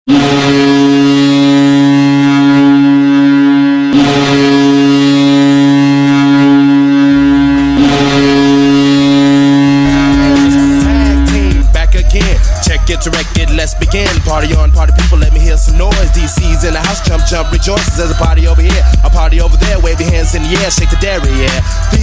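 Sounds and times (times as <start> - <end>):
deep air horn blasts: 0.1 - 22.0.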